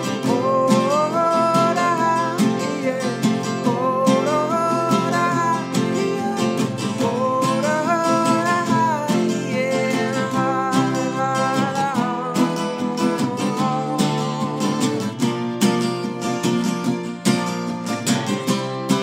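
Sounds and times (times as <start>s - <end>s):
acoustic guitar strumming: 0.0s - 19.0s.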